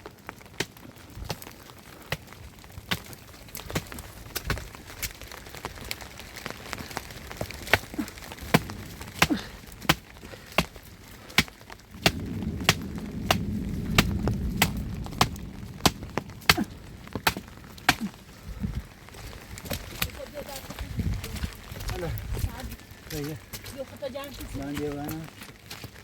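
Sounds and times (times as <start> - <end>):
wood snapping and cracking: 0.0 - 26.0
low rumble: 11.9 - 20.0.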